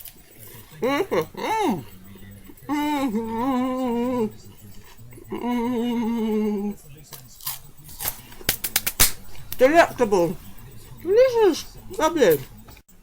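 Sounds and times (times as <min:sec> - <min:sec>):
woman humming: 0:02.6 - 0:04.4, 0:05.2 - 0:06.8.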